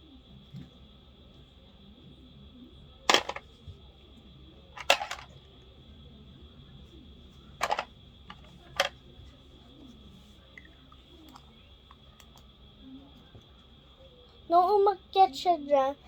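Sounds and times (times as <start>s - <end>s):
faint high-pitched hum: 0.0s - 16.0s.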